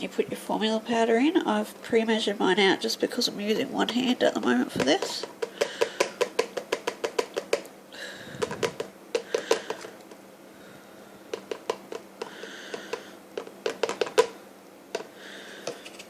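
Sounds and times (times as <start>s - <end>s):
plastic container tapping bottle: 4.4s - 10.1s, 11.3s - 16.0s.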